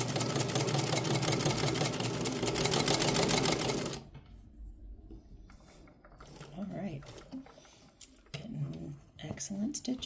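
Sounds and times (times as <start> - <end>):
sewing machine clattering: 0.0 - 4.1.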